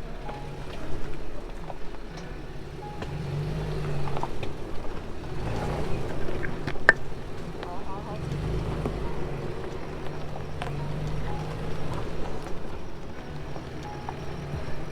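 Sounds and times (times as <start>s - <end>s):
pickup engine rumbling: 0.0s - 14.9s.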